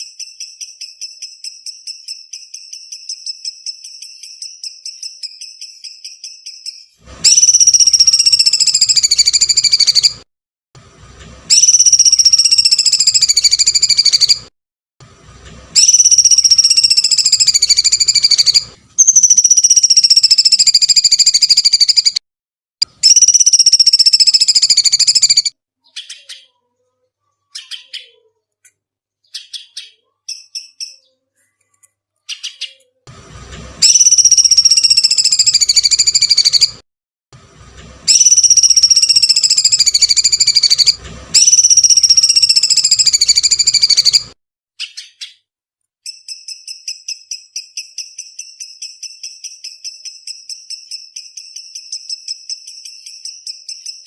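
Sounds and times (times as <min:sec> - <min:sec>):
faint bird chirps: 0:00.0 - 0:10.2, 0:11.5 - 0:14.5, 0:15.8 - 0:22.2, 0:23.0 - 0:33.0, 0:33.8 - 0:36.8, 0:38.1 - 0:54.0
bird screeching notes: 0:15.8 - 0:22.2, 0:38.1 - 0:45.1.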